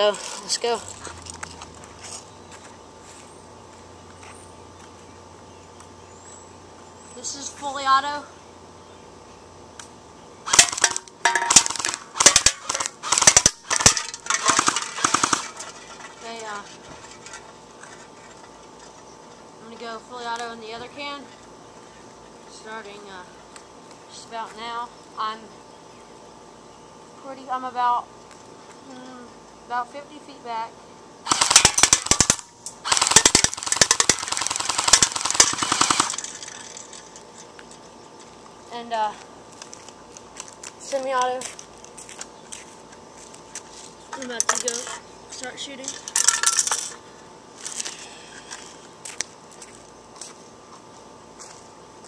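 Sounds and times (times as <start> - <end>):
airsoft rifle firing bursts: 10.5 - 15.6, 31.3 - 36.4.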